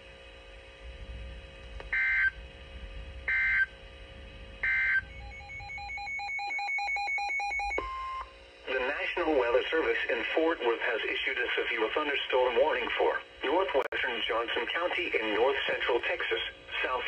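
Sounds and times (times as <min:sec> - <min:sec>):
screechy digital data tones: 0:04.6 - 0:07.8
fast chattering beep tones: 0:04.6 - 0:08.2.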